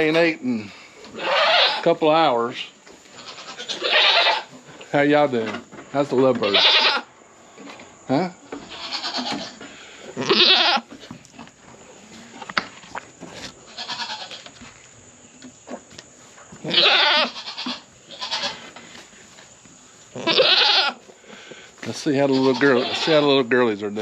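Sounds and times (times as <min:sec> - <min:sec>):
goats bleating: 0:01.1 - 0:01.9, 0:03.1 - 0:04.6, 0:06.4 - 0:07.1, 0:08.5 - 0:10.9, 0:13.7 - 0:14.5, 0:16.6 - 0:18.7, 0:20.2 - 0:21.1, 0:22.0 - 0:23.5.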